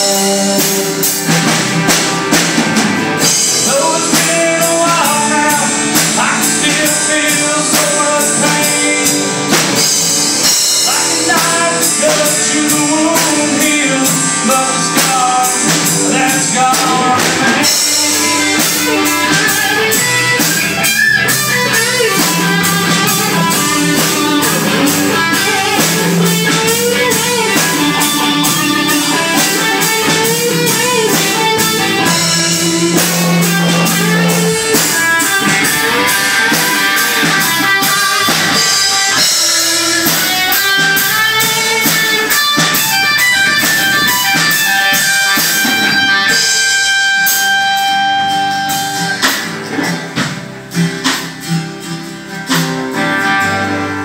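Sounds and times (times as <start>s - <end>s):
rock band playing: 0.0s - 54.0s
lead guitar solo: 15.3s - 50.7s, 51.7s - 54.0s.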